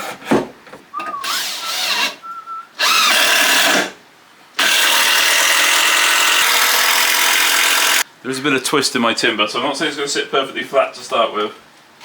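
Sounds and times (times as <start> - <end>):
power drill boring into wood: 1.2 - 2.2, 2.8 - 4.0, 4.6 - 8.0.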